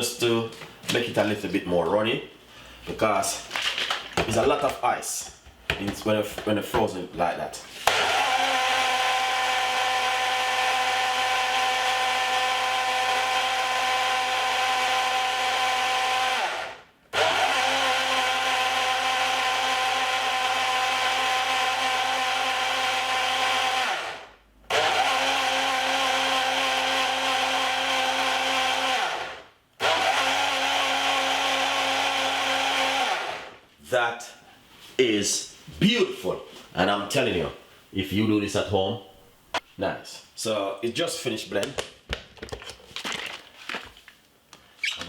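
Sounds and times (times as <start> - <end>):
blender running: 7.8 - 33.6.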